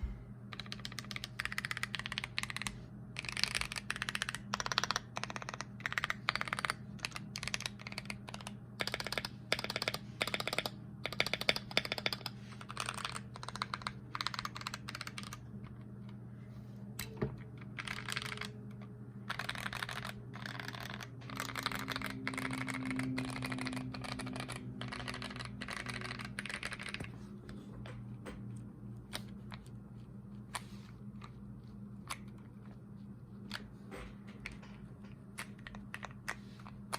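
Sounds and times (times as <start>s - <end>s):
low hum: 0.0s - 0.6s
mechanical keyboard typing: 0.5s - 15.8s, 17.0s - 27.1s.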